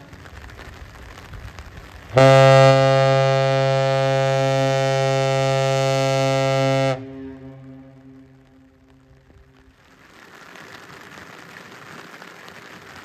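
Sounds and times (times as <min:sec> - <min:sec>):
ship horn blast: 0:02.1 - 0:09.6.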